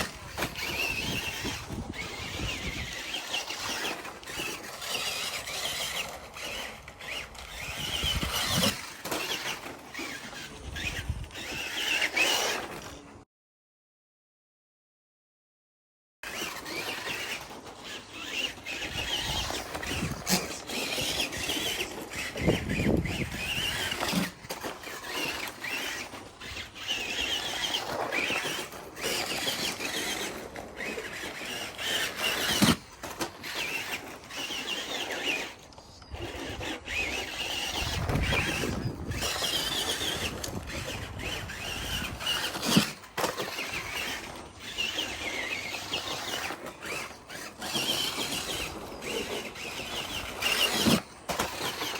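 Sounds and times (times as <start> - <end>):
electric motor and gears whining: 0.0 - 13.2, 16.2 - 51.9.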